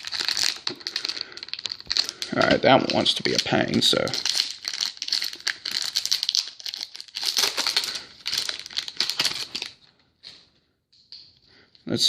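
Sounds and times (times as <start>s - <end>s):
card pack wrapper crinkling and tearing: 0.0s - 10.4s.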